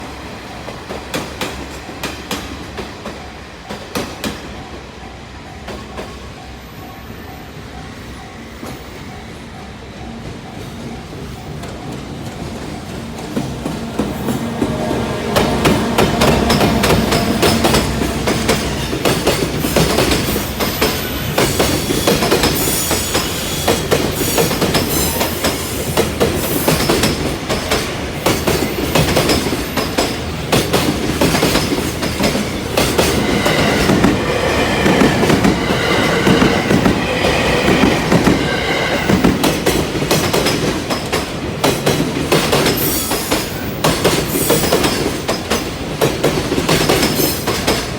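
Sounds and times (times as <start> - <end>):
freight train rumbling past: 0.0 - 47.9
wheels clacking over rail joints: 11.5 - 47.9
high wheel squeal: 42.8 - 45.0.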